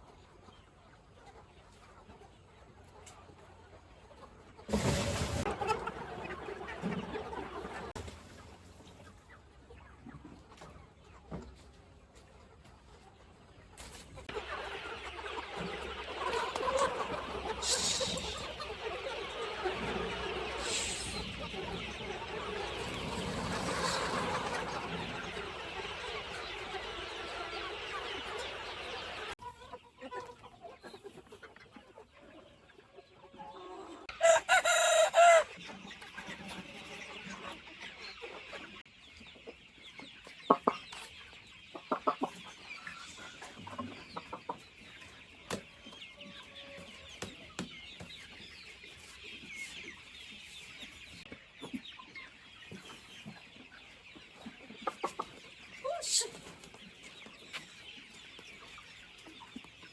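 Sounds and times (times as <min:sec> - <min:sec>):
chickens clucking: 0:00.0 - 0:59.9
rooster crowing: 0:34.2 - 0:35.5.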